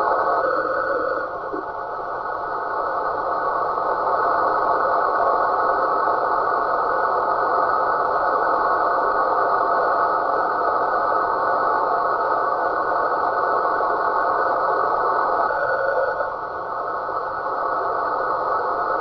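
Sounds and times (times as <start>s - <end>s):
noisy radio signal with tones: 0.0s - 19.0s.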